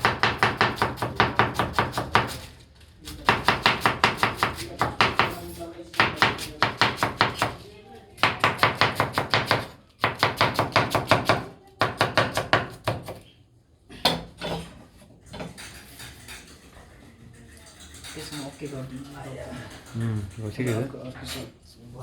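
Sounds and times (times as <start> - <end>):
knife chopping cabbage on board: 0.0 - 2.5, 3.1 - 7.6, 8.2 - 13.2.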